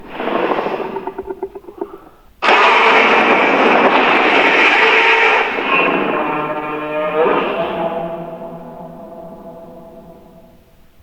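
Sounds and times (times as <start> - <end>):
harsh monster roar: 2.4 - 10.5
pulsing monster call: 2.4 - 11.0.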